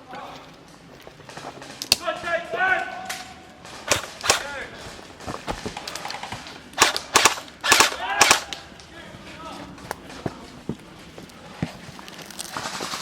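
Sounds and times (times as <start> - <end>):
airsoft gun shots: 3.8 - 4.7, 6.8 - 8.6.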